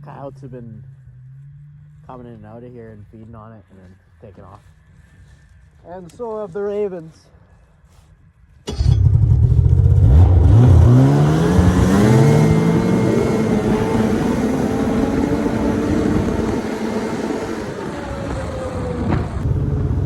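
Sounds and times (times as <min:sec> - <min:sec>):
snowmobile engine: 0:08.7 - 0:20.0.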